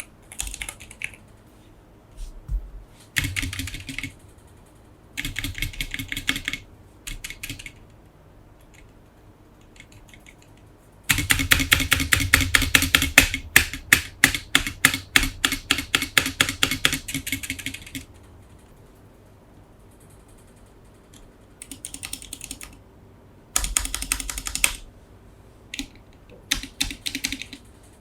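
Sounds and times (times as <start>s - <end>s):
mechanical keyboard typing: 0.0s - 1.3s, 3.2s - 4.2s, 5.2s - 7.9s, 9.6s - 18.2s, 20.0s - 22.8s, 23.6s - 24.9s, 25.7s - 27.7s.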